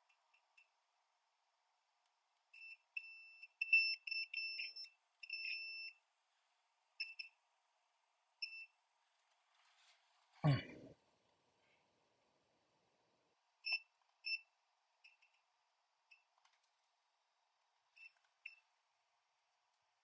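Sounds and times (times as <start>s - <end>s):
multimeter continuity beeps: 2.5s - 6.0s, 7.0s - 7.4s, 8.4s - 8.8s, 13.6s - 15.4s, 17.9s - 18.7s.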